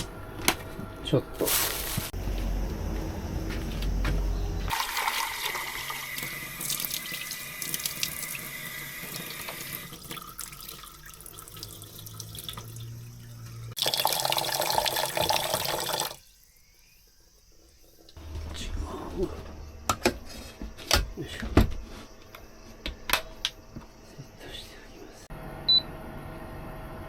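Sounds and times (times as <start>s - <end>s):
water running into a pot: 4.7s - 16.2s.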